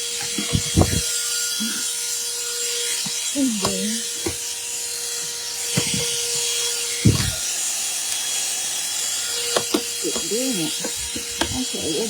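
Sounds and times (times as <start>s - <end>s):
car vacuum whining: 0.0s - 4.5s, 5.1s - 12.0s
dull thump: 0.4s - 1.1s, 7.0s - 7.4s
light knocks: 0.4s - 1.1s, 7.0s - 7.4s.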